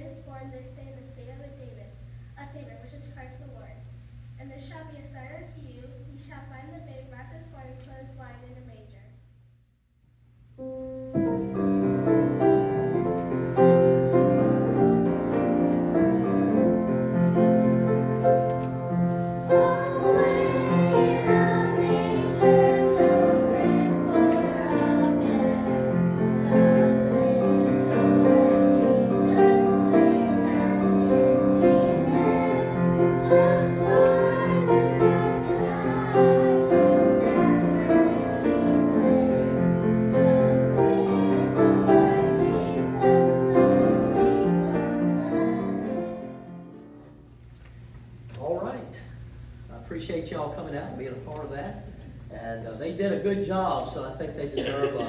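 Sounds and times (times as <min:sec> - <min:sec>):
piano accompaniment: 0:10.6 - 0:47.2
children and women singing: 0:19.5 - 0:46.8.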